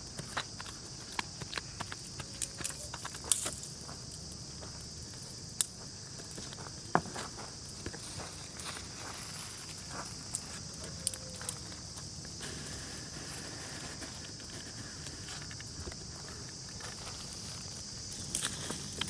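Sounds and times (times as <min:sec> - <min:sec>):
high-pitched insect chorus: 0:00.0 - 0:19.0.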